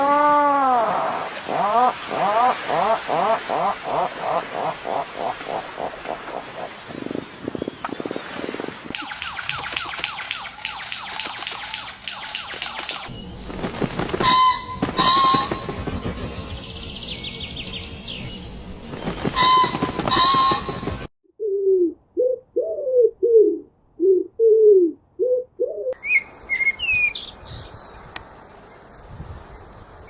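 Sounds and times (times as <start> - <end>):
high bird chirps and whistles: 9.0 - 13.1, 26.0 - 27.7
low falling bird notes: 9.0 - 22.5.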